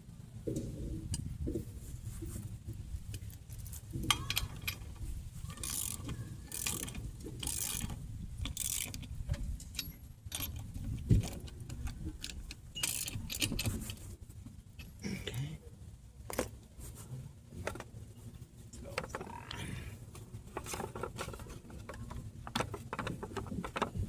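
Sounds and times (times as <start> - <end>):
ratchet wrench clicking: 5.6 - 13.8.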